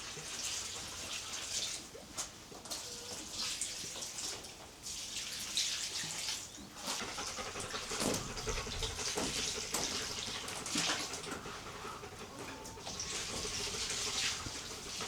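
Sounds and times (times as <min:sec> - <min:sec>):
water running and splashing: 0:03.3 - 0:15.0.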